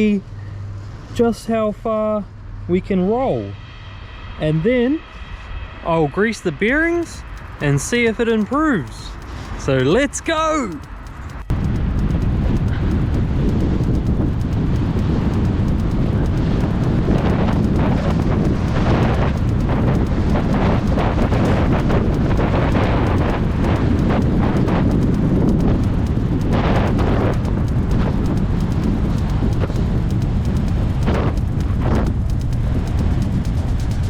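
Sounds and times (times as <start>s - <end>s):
wind buffeting microphone: 2.4s - 34.0s.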